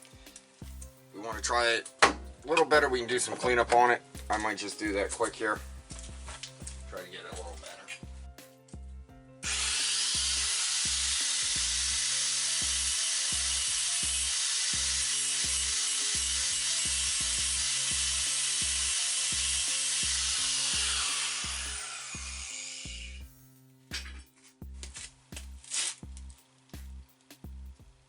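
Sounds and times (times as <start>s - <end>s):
background music beat: 0.0s - 28.0s
angle grinder grinding steel: 9.4s - 23.2s.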